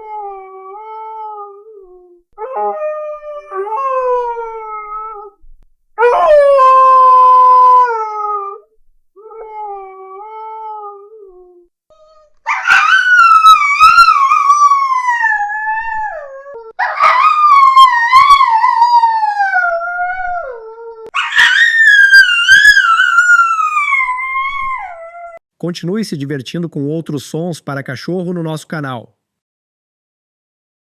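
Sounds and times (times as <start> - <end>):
dog howling: 2.4 - 5.4, 6.0 - 8.6, 9.2 - 25.4.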